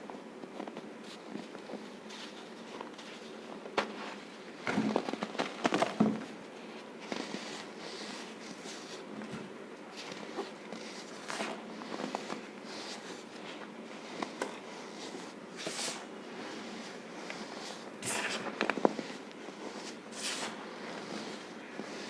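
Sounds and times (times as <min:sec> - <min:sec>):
squeaks of crushed powder: 0:13.9 - 0:22.0.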